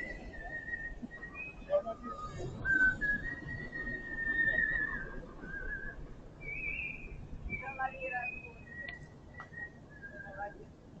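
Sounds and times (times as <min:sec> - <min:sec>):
man whistling a melody: 0:02.5 - 0:10.5.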